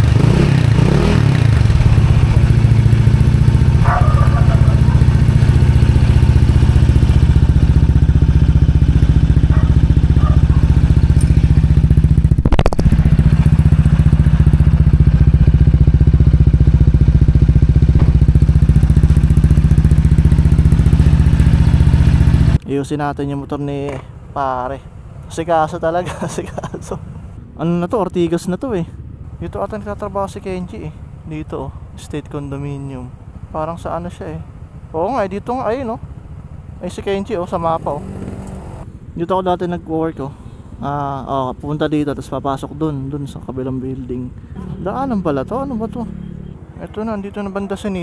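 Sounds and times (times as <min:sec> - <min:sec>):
motorcycle engine idling: 0:00.0 - 0:22.6, 0:28.9 - 0:39.0.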